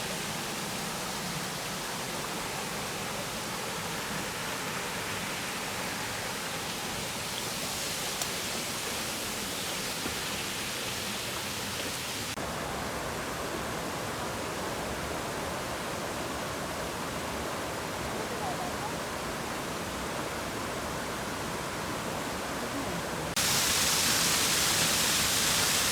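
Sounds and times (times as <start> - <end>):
waterfall rushing: 23.1 - 25.9.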